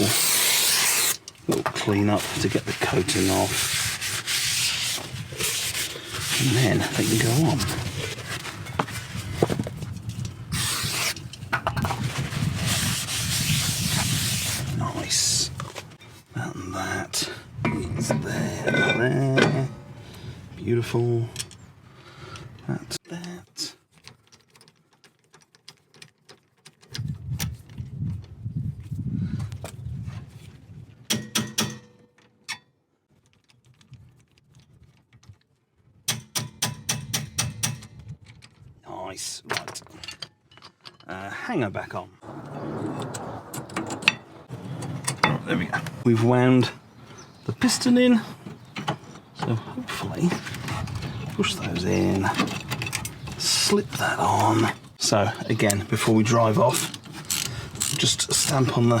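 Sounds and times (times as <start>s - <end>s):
coating scraped off brake disc: 0.0s - 9.8s, 10.4s - 15.5s
metallic clicks of hand tools: 36.1s - 38.5s.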